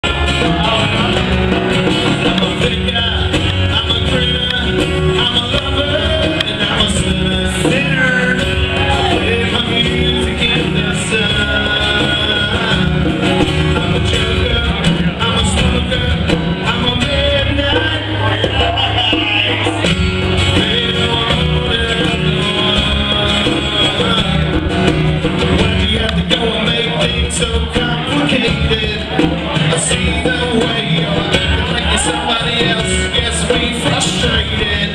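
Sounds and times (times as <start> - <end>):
bass line: 0.0 - 34.9
guitars: 0.0 - 34.9
live country-rock band: 0.0 - 34.9
steady drum beat: 0.0 - 34.9.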